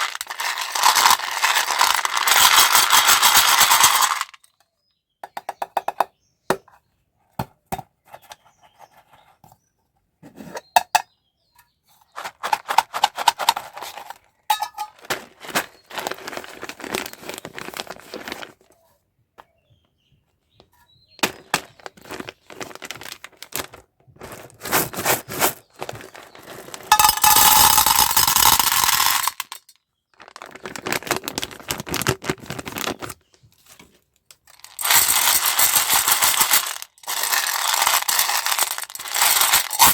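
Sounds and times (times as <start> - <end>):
small hard pieces clicking: 0.0 - 4.5, 12.2 - 18.5, 21.2 - 23.8, 24.7 - 33.2, 34.3 - 39.9
plastic wrappers crinkling and tearing: 14.8 - 18.6, 21.2 - 26.9, 30.1 - 33.4, 34.5 - 39.9.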